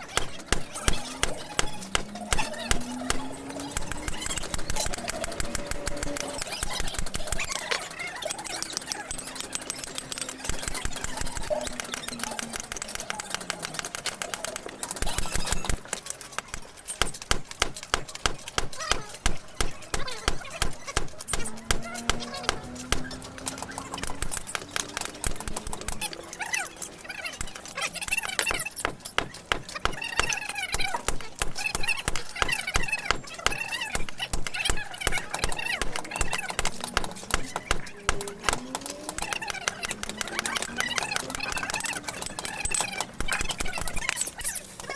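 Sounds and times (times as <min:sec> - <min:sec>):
hammer tapping on metal: 0:00.0 - 0:07.5, 0:16.9 - 0:26.2, 0:27.4 - 0:44.6.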